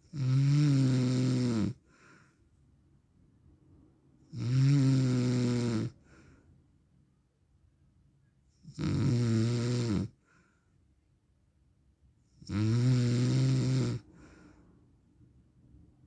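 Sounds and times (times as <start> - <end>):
man snoring: 0.1 - 1.8, 4.3 - 6.0, 8.7 - 10.2, 12.5 - 14.1.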